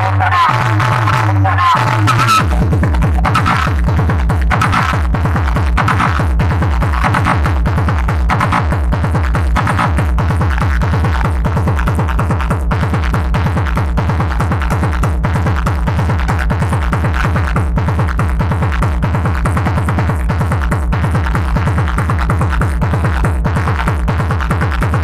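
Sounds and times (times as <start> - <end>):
electronic dance music: 0.0 - 25.0.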